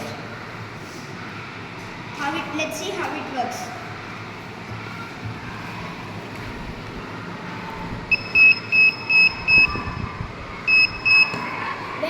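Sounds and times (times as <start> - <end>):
steady background noise: 0.0 - 12.0
short high-pitched alarm beeps: 8.1 - 9.8, 10.7 - 11.4.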